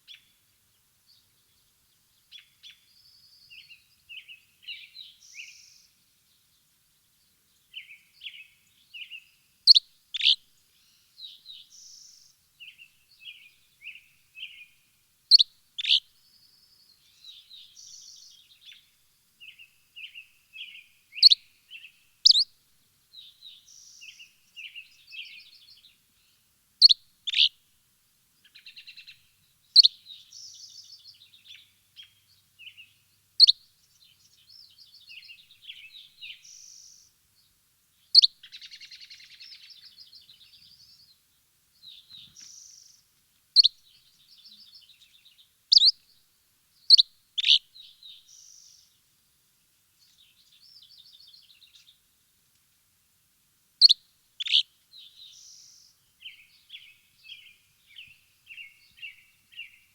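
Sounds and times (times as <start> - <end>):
sharp bird chirps: 22.2 - 22.4, 38.2 - 39.8, 45.7 - 46.0, 46.9 - 47.6, 53.8 - 54.6.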